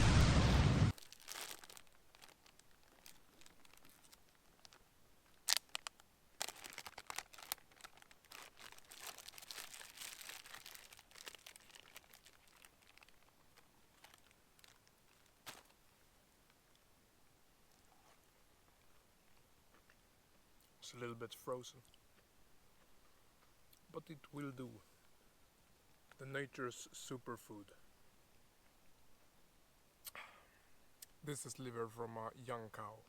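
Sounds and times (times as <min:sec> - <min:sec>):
packaging crinkling: 0:00.9 - 0:15.8.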